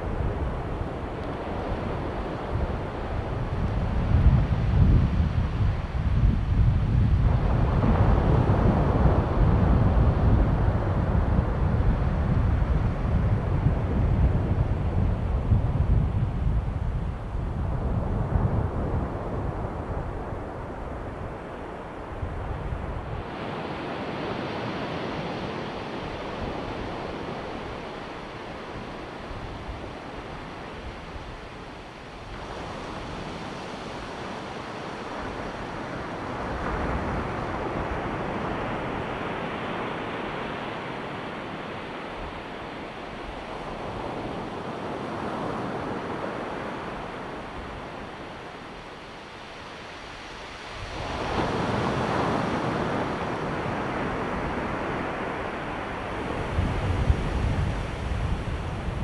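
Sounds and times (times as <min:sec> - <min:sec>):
waves breaking on beach: 0:18.1 - 0:59.0.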